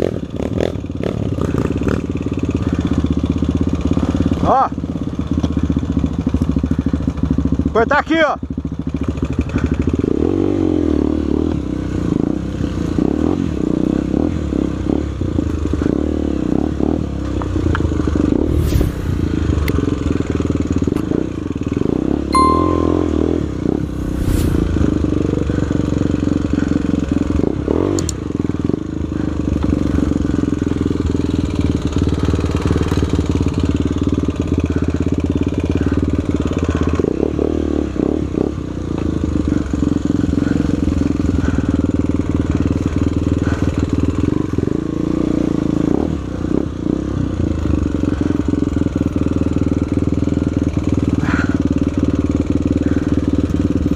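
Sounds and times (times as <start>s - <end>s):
motorcycle engine running: 0.0s - 22.0s, 23.9s - 53.9s
short beep: 22.4s - 25.2s.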